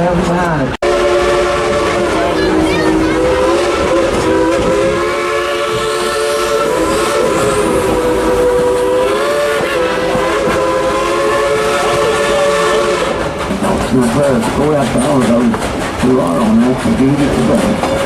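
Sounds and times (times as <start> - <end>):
running train noise: 0.0 - 18.0
steam locomotive chime whistle: 0.8 - 13.2.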